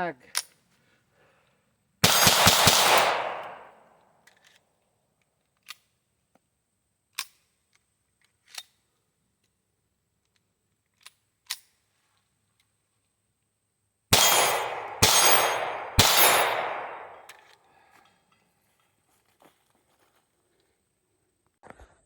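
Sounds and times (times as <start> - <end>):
pistol shot with echo: 2.0 - 3.8, 14.2 - 17.3
faint sharp cracks: 2.8 - 4.5, 14.2 - 18.1.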